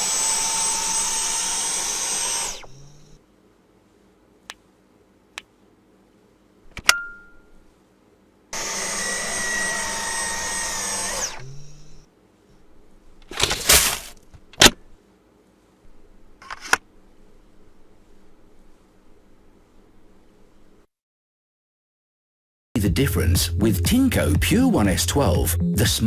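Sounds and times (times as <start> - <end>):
stick vacuum running: 0.0 - 3.2, 8.6 - 12.0.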